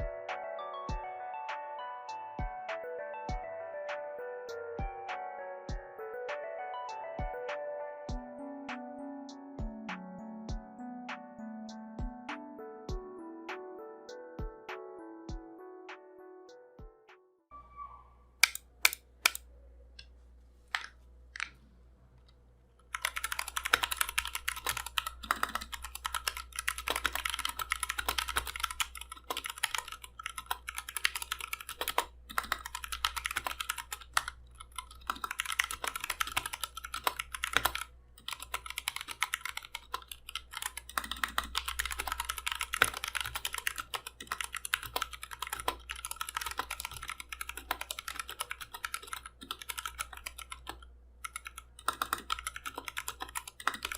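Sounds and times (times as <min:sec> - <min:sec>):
clacky mechanical keyboard typing: 0:22.8 - 0:53.9.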